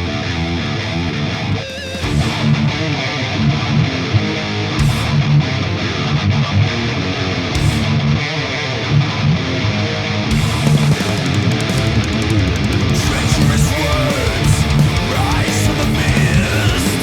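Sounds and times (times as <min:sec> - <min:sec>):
heavy metal electric guitar riffing: 0:00.0 - 0:17.0
band backing track with drums: 0:01.8 - 0:02.6, 0:04.8 - 0:05.1, 0:07.6 - 0:07.9, 0:10.3 - 0:17.0.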